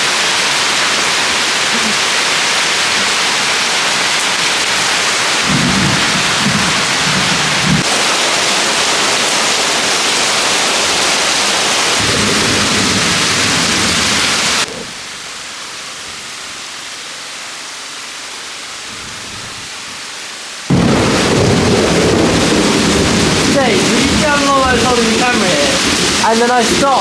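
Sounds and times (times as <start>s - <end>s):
heavy rain pouring: 0.0s - 27.0s
thunder rumble: 5.4s - 9.7s, 11.9s - 15.0s, 20.7s - 27.0s.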